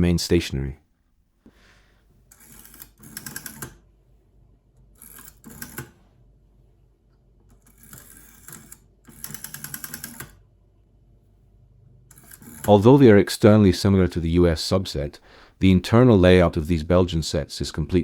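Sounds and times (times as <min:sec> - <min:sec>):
rotary phone dial clicking: 0:02.3 - 0:03.8, 0:05.0 - 0:05.9, 0:07.7 - 0:10.3, 0:12.1 - 0:12.7.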